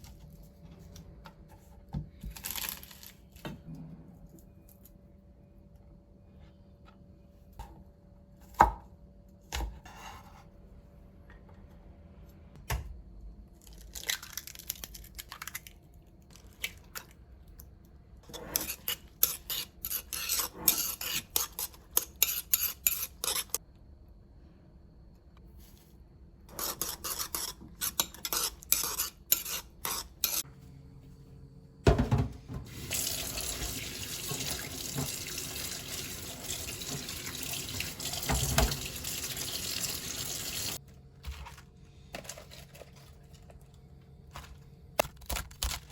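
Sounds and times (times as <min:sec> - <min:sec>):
water tap running: 0:32.6 - 0:40.8.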